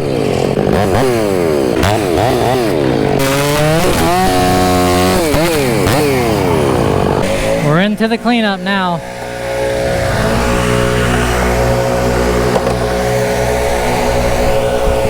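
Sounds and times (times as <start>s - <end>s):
chainsaw cutting a trunk: 0.0s - 15.0s
low engine drone: 6.4s - 15.0s.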